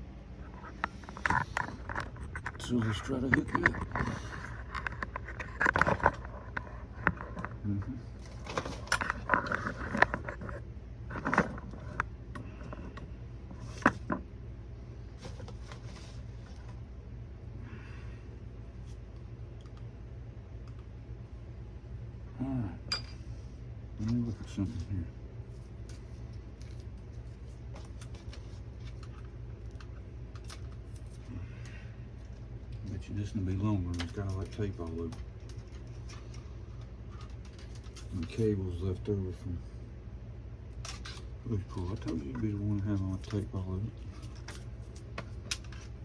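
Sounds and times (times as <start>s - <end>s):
steady low hum: 0.0s - 46.0s
small hard parts clicking and scraping: 0.5s - 14.2s, 25.8s - 38.9s, 40.8s - 46.0s.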